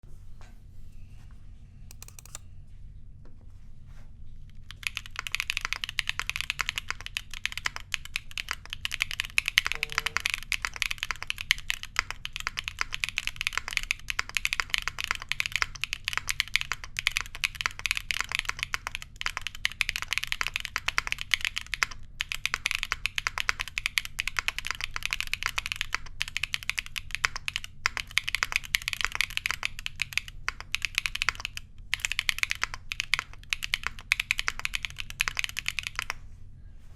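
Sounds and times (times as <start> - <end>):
mechanical keyboard typing: 1.9 - 2.4, 4.5 - 36.2.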